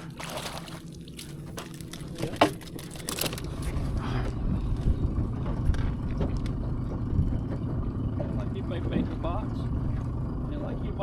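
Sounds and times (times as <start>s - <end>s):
boat motor rumble: 0.0s - 11.0s
handling knocks and rustling: 1.4s - 3.8s.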